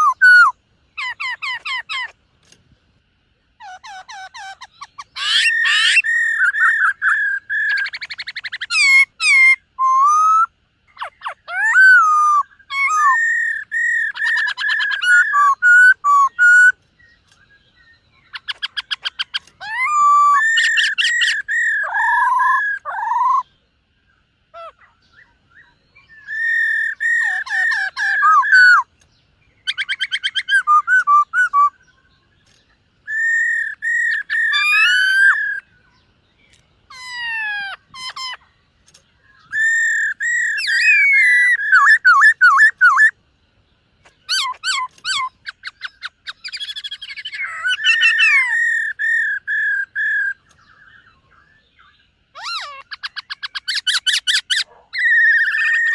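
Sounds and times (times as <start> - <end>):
bird singing whistles and trills: 0.0 - 2.2, 3.6 - 43.2, 44.0 - 55.9.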